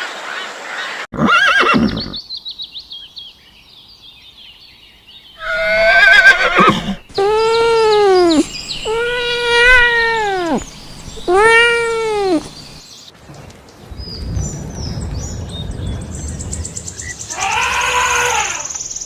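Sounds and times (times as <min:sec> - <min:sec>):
horse whinnying: 0:01.2 - 0:02.2, 0:05.4 - 0:07.9, 0:17.3 - 0:18.8
faint high bird chirping: 0:01.4 - 0:19.0
cat meowing: 0:05.4 - 0:10.6, 0:11.2 - 0:12.5.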